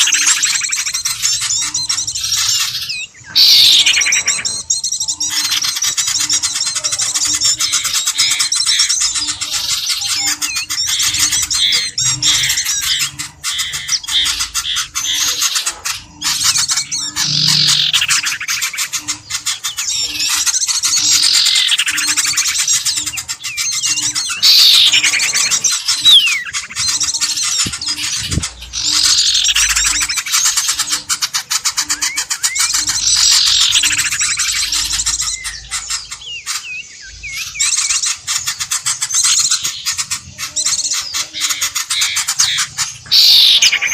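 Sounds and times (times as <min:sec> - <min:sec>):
loud falling bird call: 0:00.0 - 0:04.7, 0:16.4 - 0:30.7, 0:41.4 - 0:43.9
birds chattering and squawking: 0:00.0 - 0:43.9.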